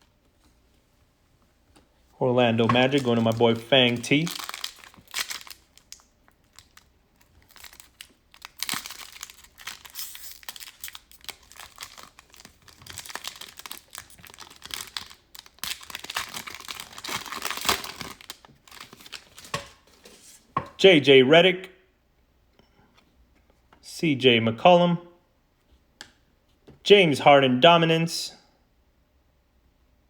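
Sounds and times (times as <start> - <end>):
foil wrapper crinkling and tearing: 2.5 - 19.8.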